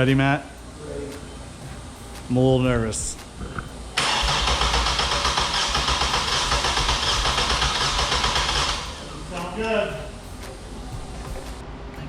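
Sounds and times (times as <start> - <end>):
car engine cranking and running: 4.0 - 9.0.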